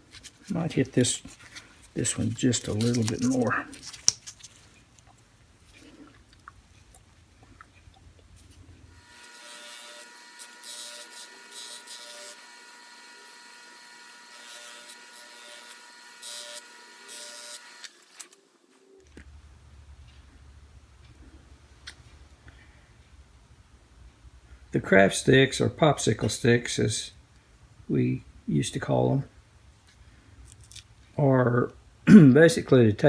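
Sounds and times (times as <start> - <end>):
small electric motor whining: 8.9 - 18.4
faint low hum: 18.5 - 33.0.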